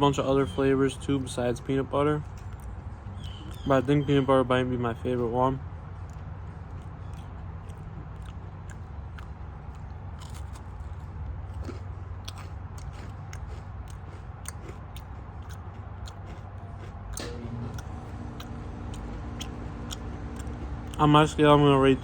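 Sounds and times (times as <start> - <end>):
person chewing granola bar: 6.0 - 21.5.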